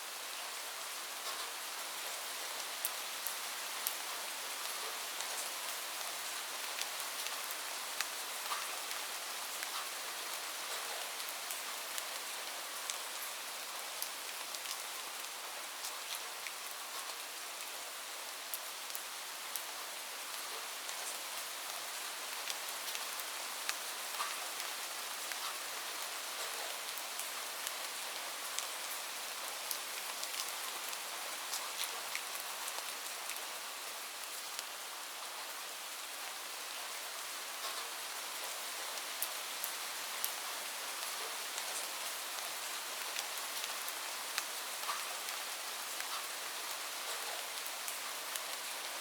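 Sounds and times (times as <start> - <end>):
light rain hiss: 0.0 - 49.0
raindrops ticking on surface: 37.6 - 48.9.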